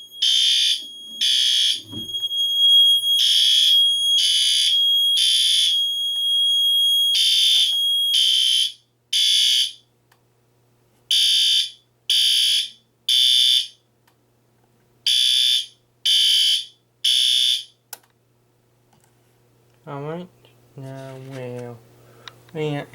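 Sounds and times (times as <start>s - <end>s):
fire alarm horn blasts: 0.0s - 9.8s, 11.1s - 13.8s, 15.1s - 17.7s.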